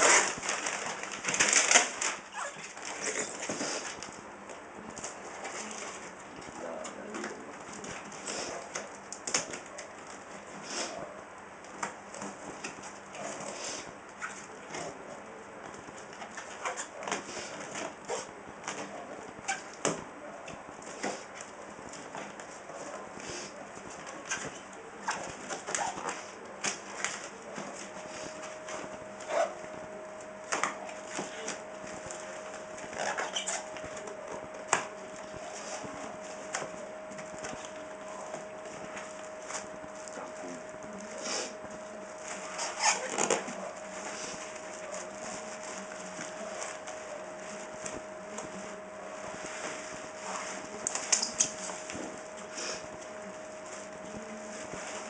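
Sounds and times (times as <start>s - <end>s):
camera and packaging handled: 0.0s - 4.0s
packaging rustling: 0.0s - 10.3s
faint steady hum: 0.0s - 55.0s.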